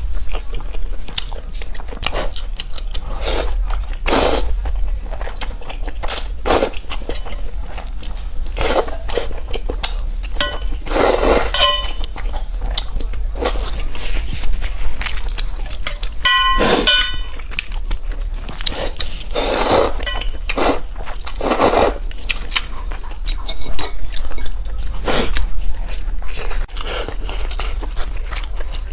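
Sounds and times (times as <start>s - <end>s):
chewing and biting: 0.0s - 28.9s
utensils clinking against dishes: 10.3s - 12.4s, 15.0s - 17.8s, 19.6s - 21.3s, 23.3s - 24.6s.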